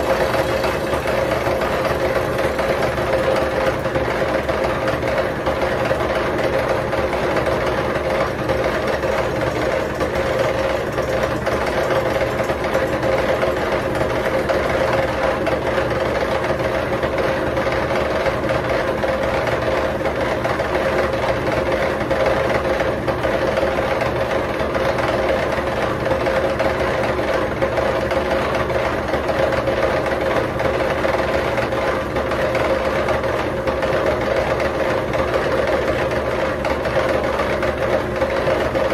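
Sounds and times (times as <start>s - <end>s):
milling machine running: 0.0s - 17.2s.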